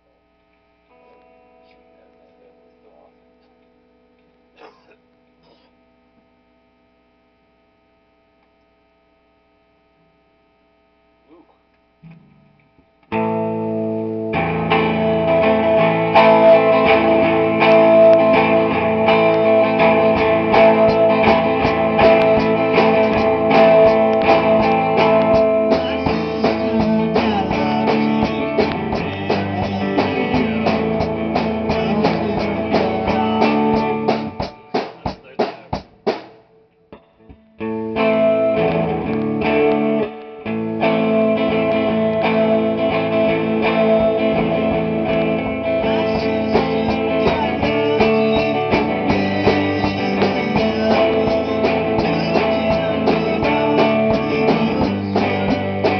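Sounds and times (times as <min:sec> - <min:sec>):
distorted electric guitar: 0:00.0 - 0:55.9
faint amplifier hum: 0:00.0 - 0:55.9
rock band playing loudly: 0:13.1 - 0:36.5, 0:37.3 - 0:55.9.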